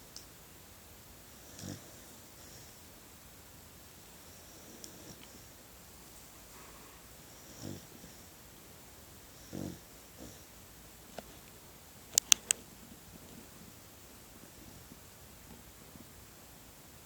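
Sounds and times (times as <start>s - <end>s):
puppy snoring: 1.3s - 2.9s, 4.2s - 5.6s, 7.2s - 8.4s, 9.3s - 10.6s
sharp clicks: 12.1s - 12.6s.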